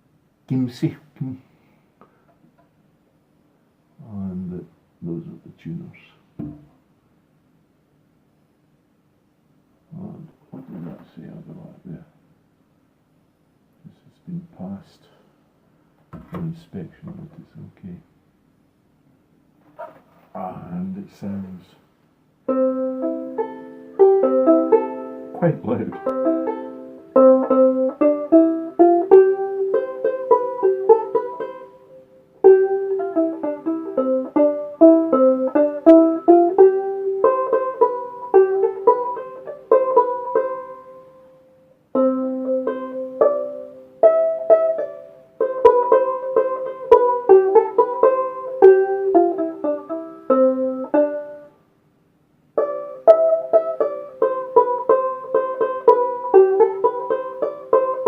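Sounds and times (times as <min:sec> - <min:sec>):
banjolele plucked tune: 0:22.4 - 0:51.6, 0:52.5 - 0:58.0.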